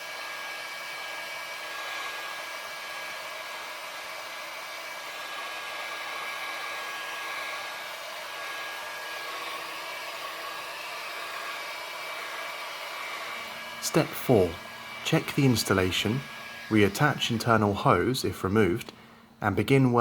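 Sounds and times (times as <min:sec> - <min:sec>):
heat gun blowing hot air: 0:00.0 - 0:19.1.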